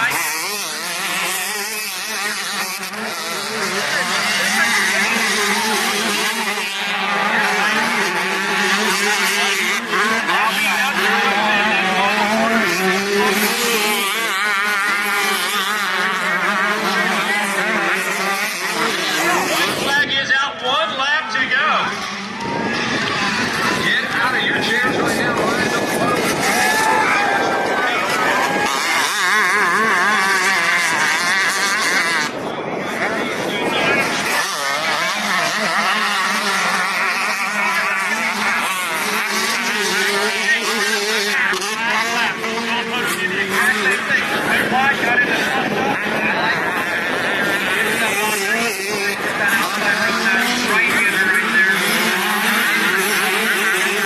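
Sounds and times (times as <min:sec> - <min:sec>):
motocross bike engines revving: 0:00.0 - 0:54.0.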